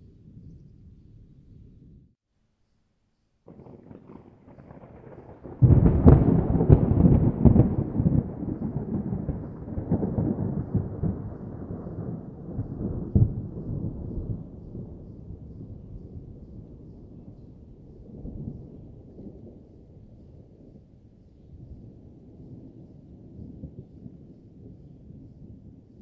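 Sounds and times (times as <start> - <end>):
thunder cracks: 3.5 - 16.8
thunder rumbling: 3.5 - 25.9.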